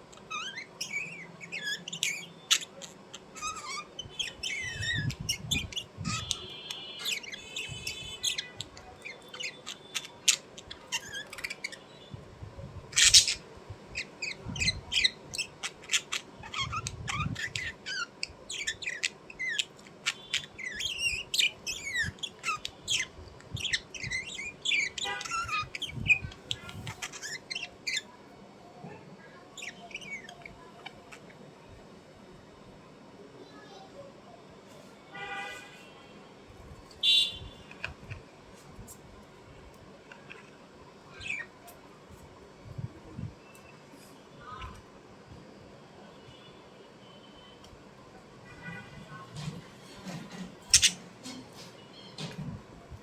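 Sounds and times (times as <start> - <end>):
small birds chirping: 0.0 - 31.8, 37.0 - 38.9, 39.8 - 41.9, 49.8 - 51.0
bird squawks: 0.2 - 11.8, 37.0 - 37.8, 50.7 - 51.0.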